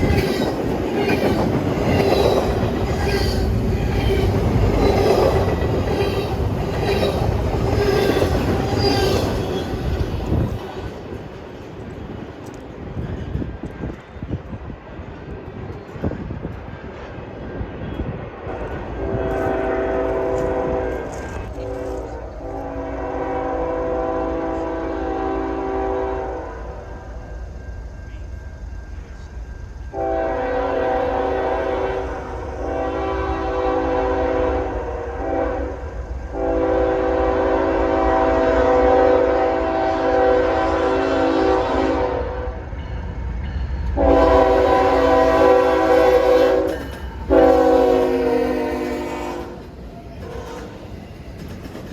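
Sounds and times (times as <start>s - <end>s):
low rumble of train: 0.0s - 51.9s
train air horn blasts: 18.5s - 27.0s, 29.9s - 42.7s, 44.0s - 50.8s.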